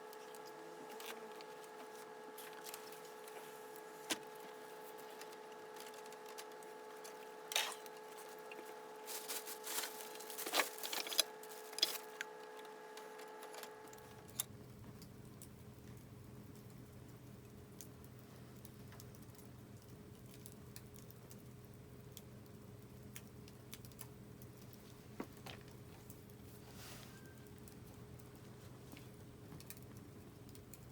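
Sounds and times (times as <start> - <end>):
faint hum: 0.0 - 20.2
wood fire crackling and popping: 0.0 - 26.6, 27.2 - 30.9.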